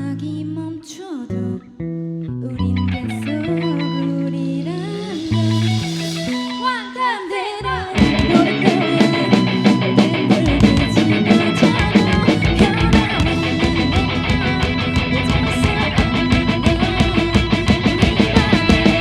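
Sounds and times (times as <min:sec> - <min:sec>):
wavering guitar lines: 0:00.0 - 0:19.0
bass guitar notes: 0:01.3 - 0:06.5, 0:07.6 - 0:19.0
rock band with drums: 0:04.4 - 0:07.2, 0:07.9 - 0:19.0.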